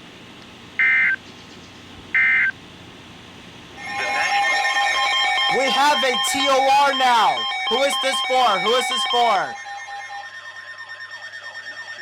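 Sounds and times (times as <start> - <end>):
buzzy digital data tones: 3.8 - 12.0
steady tones: 3.8 - 12.0.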